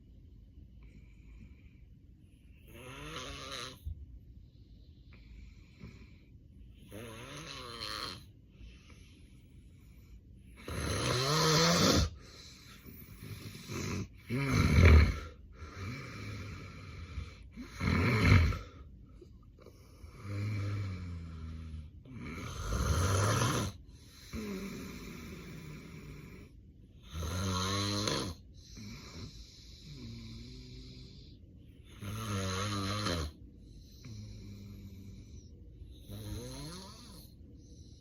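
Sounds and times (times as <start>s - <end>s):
man snoring heavily: 2.7s - 3.9s, 6.9s - 8.3s, 10.6s - 18.8s, 20.0s - 31.3s, 31.9s - 33.4s, 34.0s - 37.3s.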